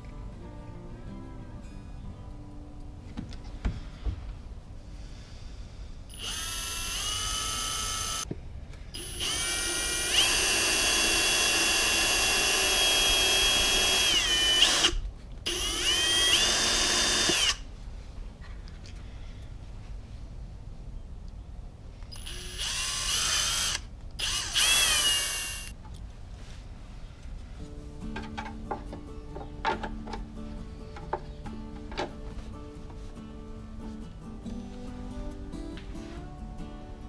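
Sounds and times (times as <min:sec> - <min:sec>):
electric drill motor whine: 0:06.1 - 0:08.2, 0:09.0 - 0:17.6, 0:22.2 - 0:25.7.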